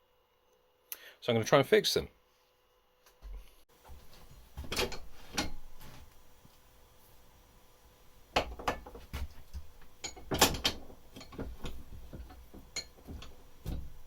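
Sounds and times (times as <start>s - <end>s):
metal tools knocking and clanking: 4.6s - 5.7s, 8.4s - 14.0s.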